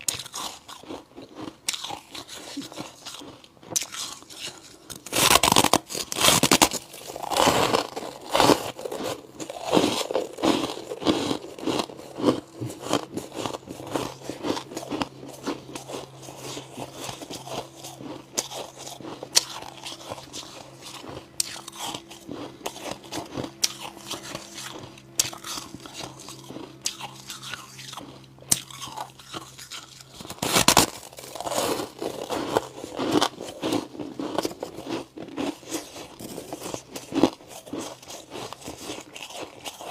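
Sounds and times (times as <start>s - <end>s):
low steady hum: 0.0s - 39.9s
person crunching ice: 0.0s - 39.9s.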